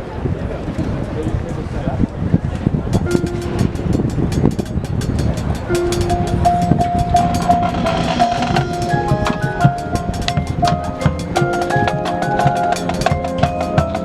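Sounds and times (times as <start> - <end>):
held wind chords: 0.0 - 14.0
marching band percussion beat: 3.0 - 14.0.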